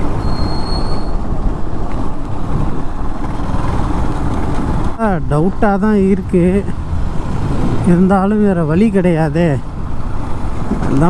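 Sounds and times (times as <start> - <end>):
vehicle road noise: 0.0 - 11.0
wind noise: 0.0 - 11.0
short high whistle-like tone: 0.2 - 1.2.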